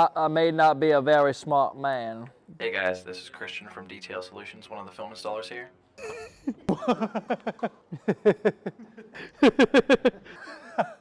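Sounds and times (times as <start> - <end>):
person laughing: 6.0 - 11.0.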